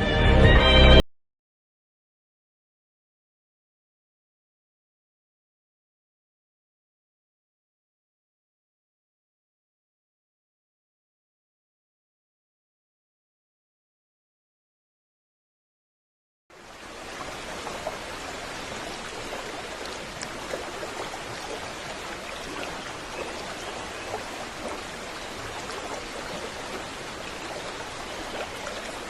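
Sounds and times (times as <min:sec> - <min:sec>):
water rushing: 0:16.5 - 0:29.0
water splashes and drips: 0:16.5 - 0:29.0.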